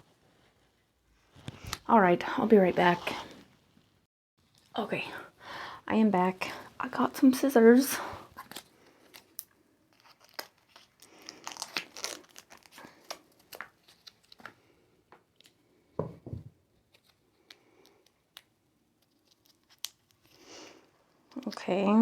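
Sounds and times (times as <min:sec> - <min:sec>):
plastic packaging crinkling: 0:08.2 - 0:14.6, 0:19.0 - 0:20.4.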